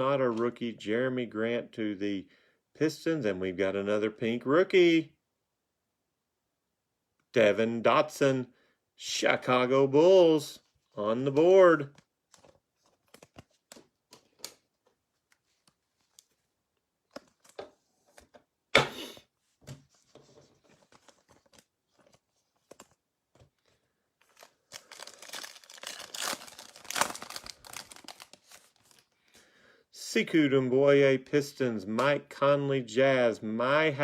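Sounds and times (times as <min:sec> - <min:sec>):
plastic wrapper crinkling and tearing: 0:24.2 - 0:29.2.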